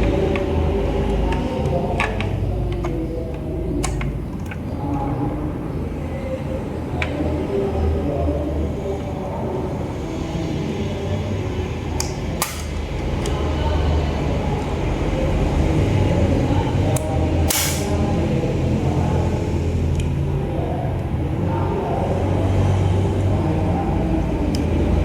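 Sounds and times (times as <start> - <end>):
sharp clicks: 17.5 - 17.9.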